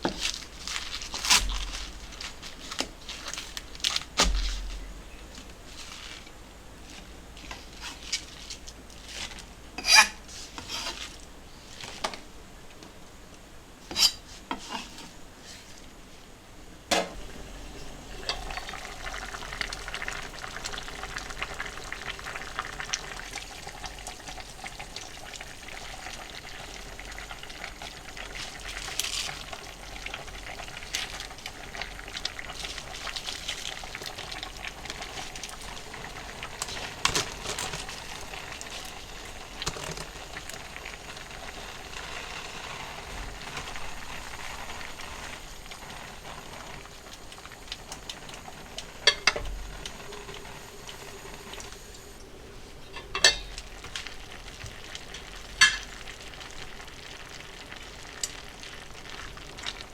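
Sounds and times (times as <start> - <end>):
food sizzling while frying: 0.0 - 12.2, 17.0 - 59.9.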